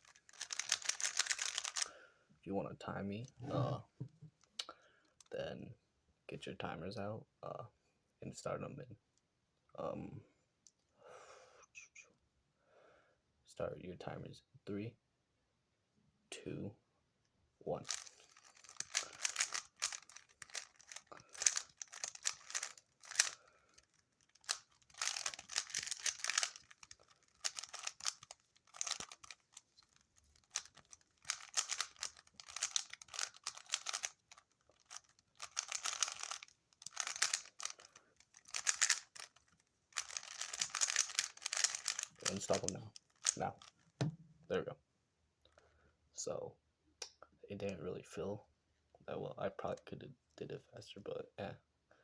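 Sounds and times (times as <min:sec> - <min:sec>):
puzzle cube plastic clicking: 0:00.0 - 0:01.9, 0:17.8 - 0:44.2.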